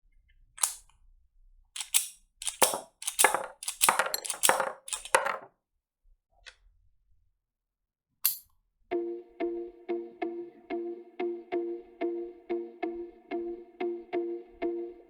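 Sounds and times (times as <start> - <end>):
toy pistol metallic clacking: 0.6 - 0.9, 1.8 - 5.4.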